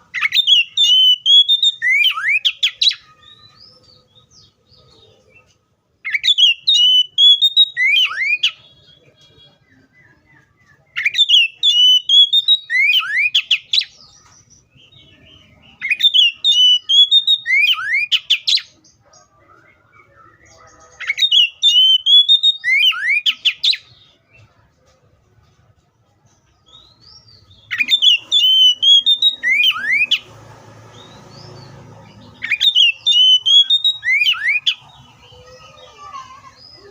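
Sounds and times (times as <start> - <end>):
bird whistling song phrase: 0.2 - 3.7, 6.1 - 8.6, 10.9 - 13.9, 15.8 - 18.7, 19.9 - 23.8, 27.7 - 30.2, 32.4 - 34.8.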